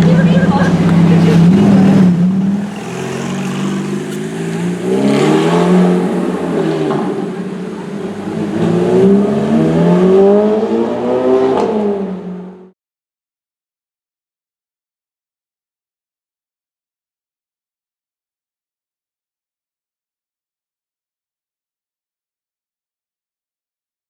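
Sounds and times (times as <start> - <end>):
sports car engine revving: 0.7 - 12.6.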